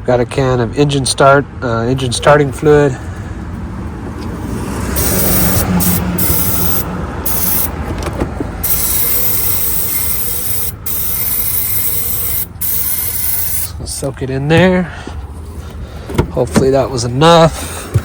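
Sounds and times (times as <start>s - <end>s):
aerosol can spraying hisses: 5.0s - 7.7s, 8.6s - 13.7s.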